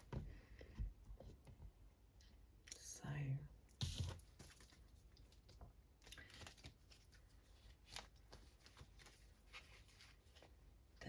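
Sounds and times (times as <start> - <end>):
pages of a book rustling: 3.8 - 10.8.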